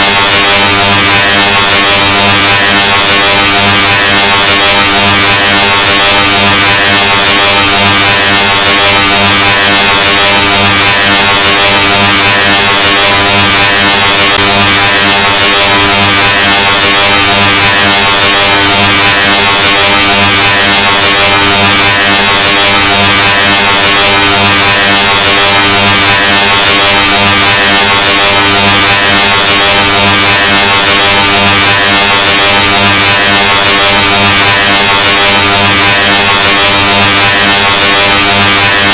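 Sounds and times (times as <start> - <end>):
harsh distorted buzzing drone: 0.0 - 38.9.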